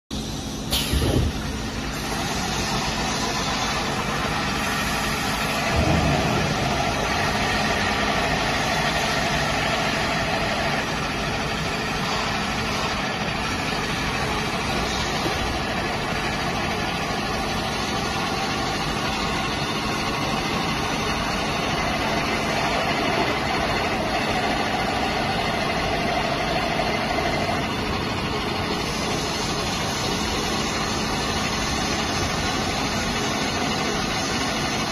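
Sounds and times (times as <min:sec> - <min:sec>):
machine humming: 0:00.2 - 0:34.9
low thump: 0:05.7 - 0:07.3.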